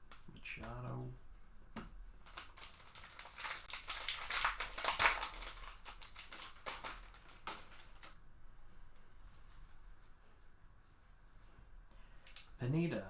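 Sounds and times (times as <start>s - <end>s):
foil wrapper crinkling and tearing: 2.2s - 8.2s.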